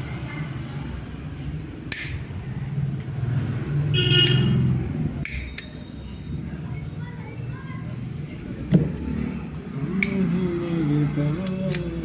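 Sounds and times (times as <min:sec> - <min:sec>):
road traffic rumble: 0:00.0 - 0:12.0
horn honk: 0:03.9 - 0:04.6.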